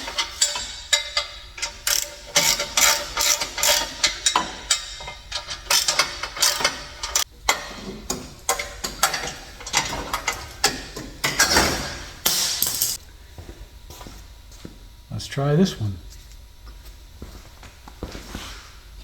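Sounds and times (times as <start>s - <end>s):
ratchet wrench clicking: 0.0s - 7.3s.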